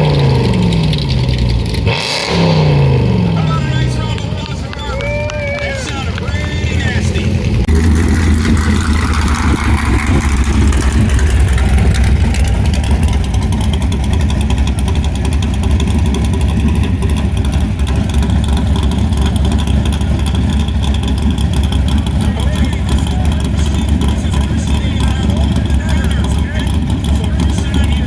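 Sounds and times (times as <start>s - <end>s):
car engine idling loudly: 0.0s - 28.0s
applause: 4.1s - 7.0s.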